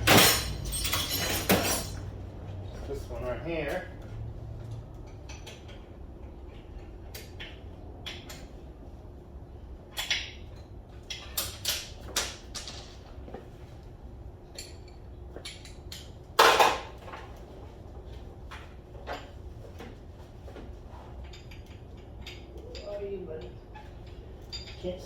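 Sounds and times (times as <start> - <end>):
loud metallic clank: 0.0 - 2.0
metal tools clinking: 0.0 - 2.2, 21.2 - 25.0.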